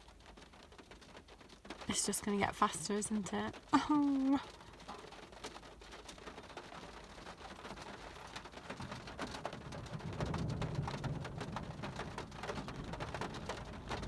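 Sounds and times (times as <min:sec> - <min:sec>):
heavy rain on car roof: 0:00.0 - 0:14.0
low thunder rumble: 0:08.8 - 0:14.0.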